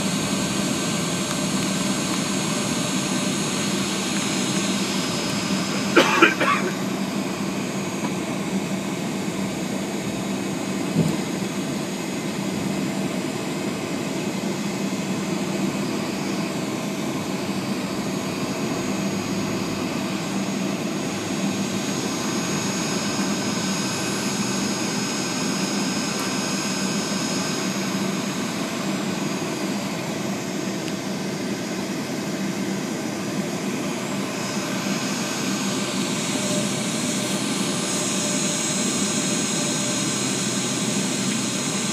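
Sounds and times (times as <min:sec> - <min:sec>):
high fan whine: 0:00.0 - 0:41.9
jet engines roaring in cabin: 0:00.0 - 0:41.9.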